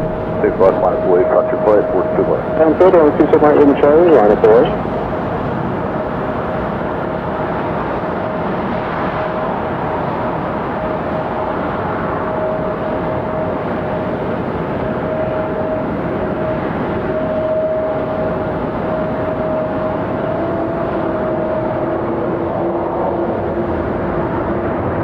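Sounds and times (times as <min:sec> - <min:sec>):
high even whine: 0:00.0 - 0:06.0
lower whine: 0:00.0 - 0:13.7
jet engine rumble: 0:00.0 - 0:15.7.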